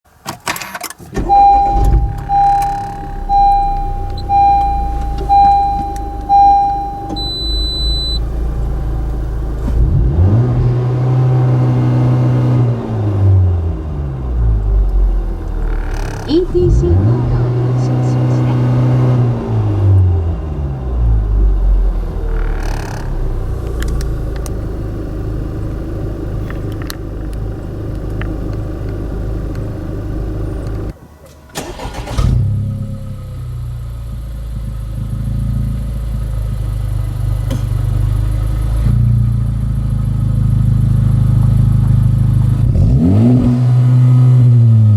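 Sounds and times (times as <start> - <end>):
car engine idling: 0.9 - 43.0
low steady hum: 1.2 - 9.6
electronic warning chime beeping: 1.3 - 8.2.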